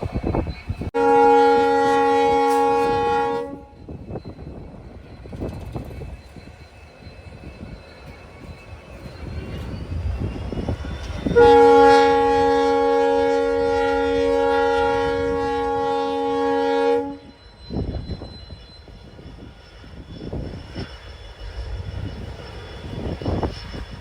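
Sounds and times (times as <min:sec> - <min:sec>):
train rumble: 0:00.0 - 0:24.0
locomotive horn blast: 0:01.0 - 0:03.8, 0:11.3 - 0:17.4.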